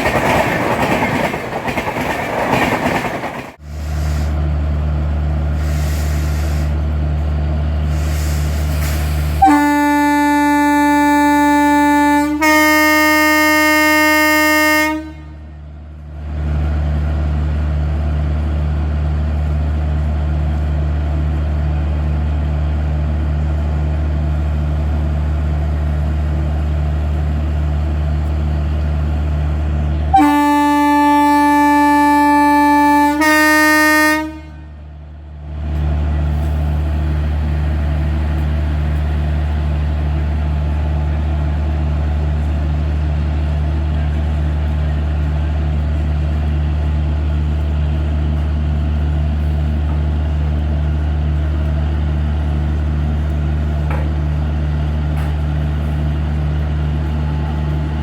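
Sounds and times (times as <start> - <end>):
twin-tone locomotive horn: 9.4 - 15.6, 30.1 - 34.9.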